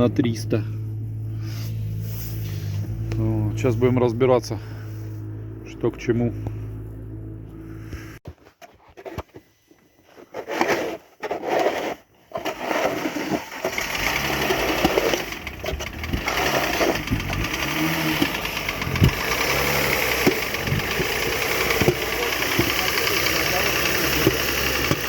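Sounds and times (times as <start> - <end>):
engine cranking: 12.3 - 25.0
engine running with knock: 13.5 - 25.0.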